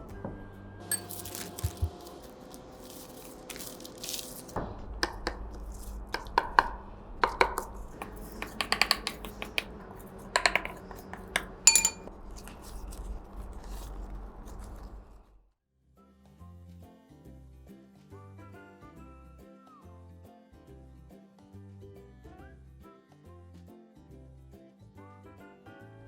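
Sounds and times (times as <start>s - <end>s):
dishes and utensils clinking: 0.9s - 4.2s, 10.3s - 12.1s.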